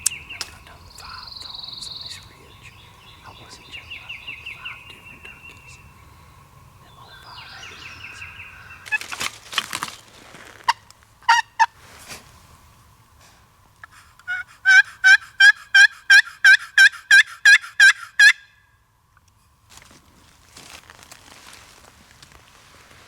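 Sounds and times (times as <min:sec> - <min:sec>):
turkey clucks: 0:10.7 - 0:11.7, 0:13.8 - 0:18.4
turkey yelping: 0:11.3 - 0:11.7, 0:13.8 - 0:18.5.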